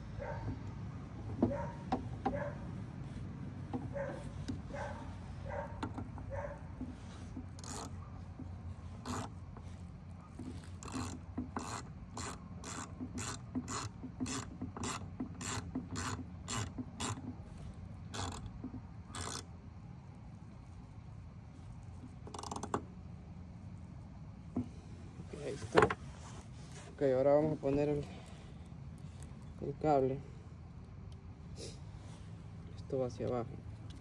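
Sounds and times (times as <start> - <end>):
ratchet wrench clicking: 7.5 - 8.0, 9.0 - 9.3, 10.5 - 17.2, 18.1 - 19.5, 22.2 - 22.8.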